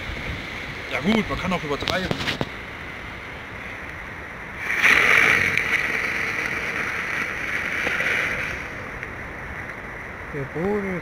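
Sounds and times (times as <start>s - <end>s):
fireworks hissing and buzzing: 4.6s - 9.0s.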